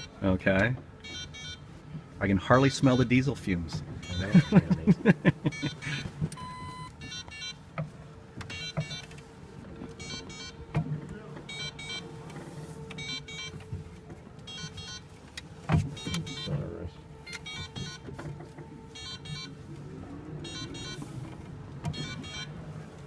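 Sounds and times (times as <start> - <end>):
electronic beeping: 1.0 - 1.6, 5.5 - 7.6, 8.5 - 9.1, 10.0 - 10.6, 11.5 - 12.1, 13.0 - 13.6, 14.5 - 15.0, 16.0 - 16.6, 18.9 - 19.6, 20.4 - 21.1, 21.9 - 22.5
electric car motor hum: 5.2 - 23.0.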